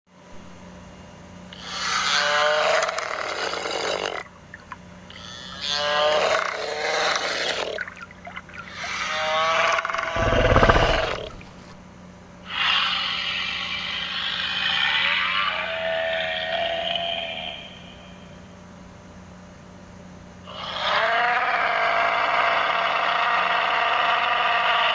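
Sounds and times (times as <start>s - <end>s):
bellowing animal calls: 8.5s - 11.7s, 20.5s - 24.9s
deep low rumble: 10.1s - 11.8s.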